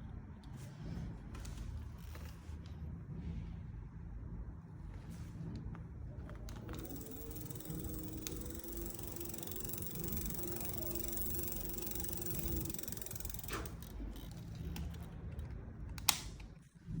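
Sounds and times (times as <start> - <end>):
electric bike motor hum: 6.3 - 15.1.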